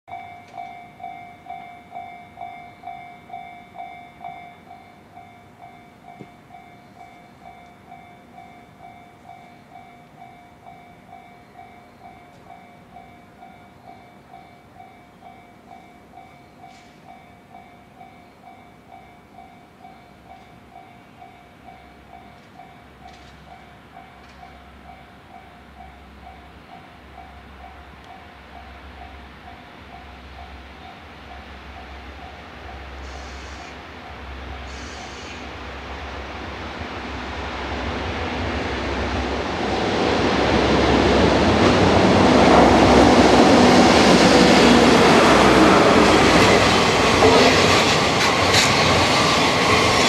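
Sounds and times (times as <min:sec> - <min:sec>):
low rumble of approaching train: 0:00.1 - 0:50.0.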